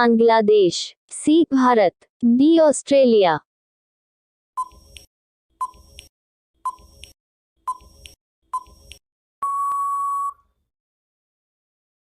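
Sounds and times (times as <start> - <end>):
short electronic beeps: 4.6 - 4.8, 6.6 - 7.0, 7.7 - 8.8, 9.4 - 10.5
long steady beep: 9.4 - 10.5.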